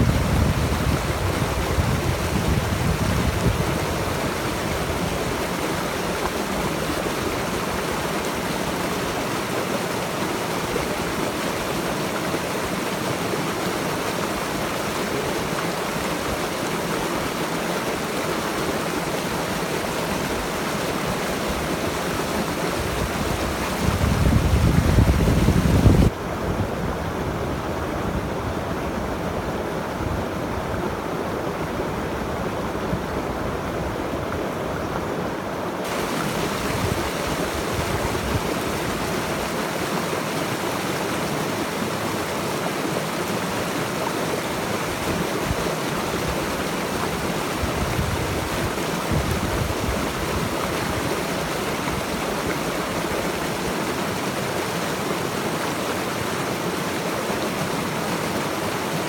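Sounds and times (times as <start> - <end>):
stream rushing: 0.0 - 59.0.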